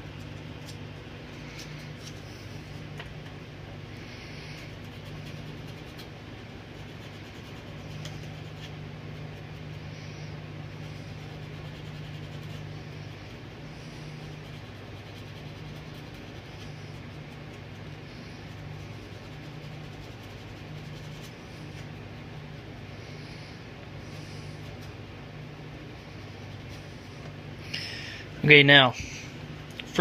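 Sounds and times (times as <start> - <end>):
steady low hum: 0.0 - 30.0
sandpaper rubbing circuit board: 4.0 - 22.1.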